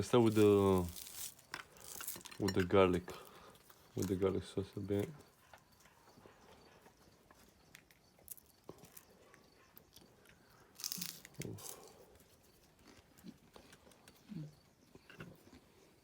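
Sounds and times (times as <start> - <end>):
food crunching and tearing: 0.0 - 4.2, 7.6 - 14.2
rustling crunch: 0.0 - 6.0, 10.6 - 14.1.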